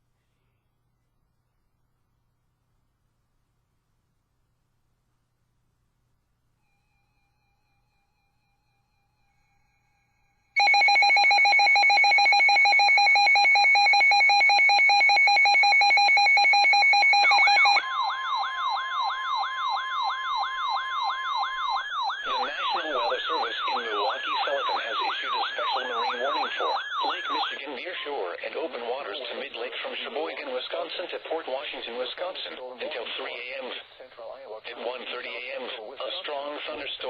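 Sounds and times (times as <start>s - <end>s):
steady alarm tone: 6.6s - 27.6s
rapidly wailing siren: 10.6s - 27.6s.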